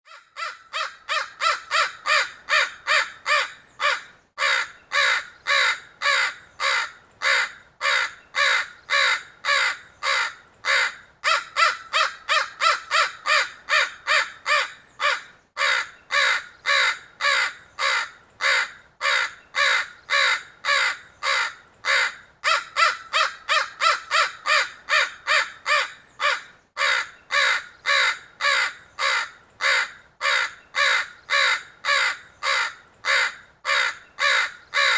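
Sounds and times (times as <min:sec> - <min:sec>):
crows cawing: 0:00.1 - 0:34.9.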